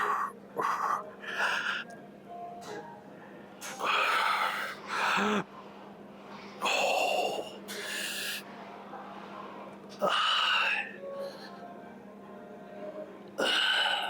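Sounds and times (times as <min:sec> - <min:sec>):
faint steady hum: 0:00.0 - 0:14.0
person grunting: 0:03.9 - 0:05.4.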